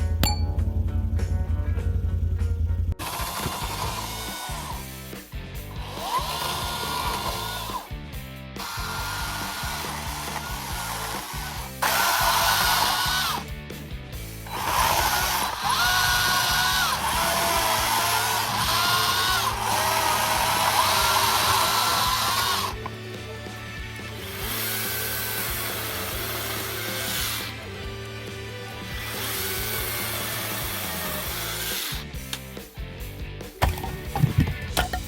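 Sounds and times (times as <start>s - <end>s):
background music: 0.0s - 35.0s
chainsaw cutting wood: 3.0s - 8.0s, 8.6s - 13.5s, 14.4s - 23.0s, 24.0s - 32.4s.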